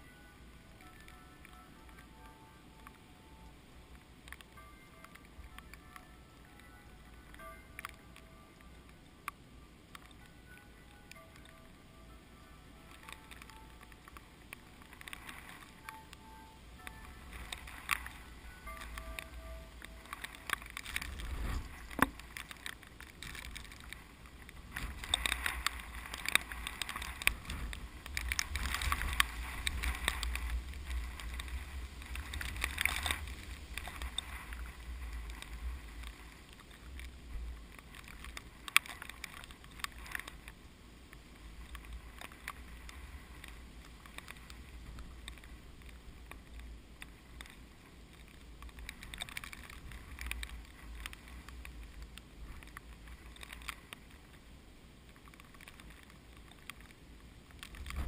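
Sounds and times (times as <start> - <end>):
rustling: 0.0 - 58.0
strong wind gusting on microphone: 21.0 - 22.4.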